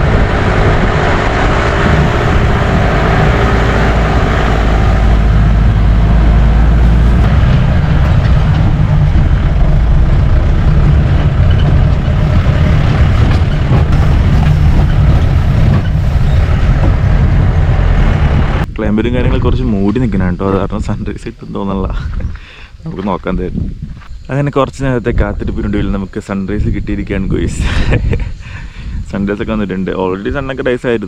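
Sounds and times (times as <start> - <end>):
car engine droning: 0.0 - 18.7.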